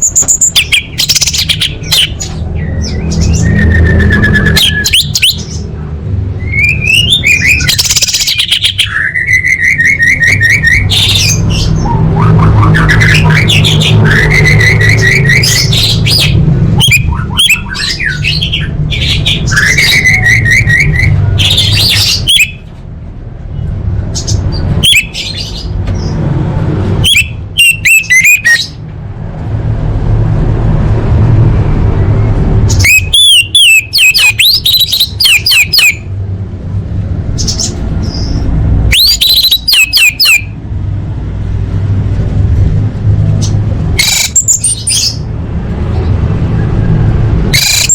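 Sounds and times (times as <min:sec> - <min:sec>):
thrush singing whistled phrases: 0:00.0 - 0:05.4, 0:06.4 - 0:22.6, 0:27.0 - 0:28.8, 0:32.8 - 0:36.1, 0:38.9 - 0:40.6.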